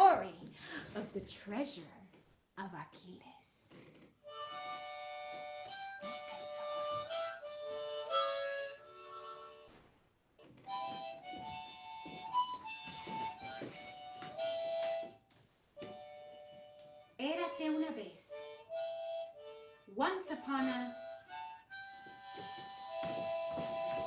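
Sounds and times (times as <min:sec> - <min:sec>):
wind instrument melody: 0:04.3 - 0:09.8, 0:10.7 - 0:15.2, 0:15.8 - 0:24.0.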